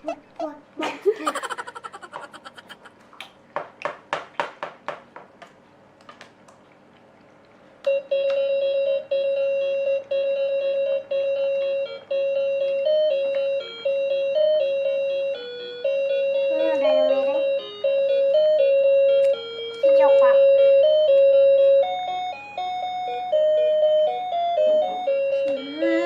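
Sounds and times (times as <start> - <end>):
electronic toy beeping melody: 8.5 - 26.0.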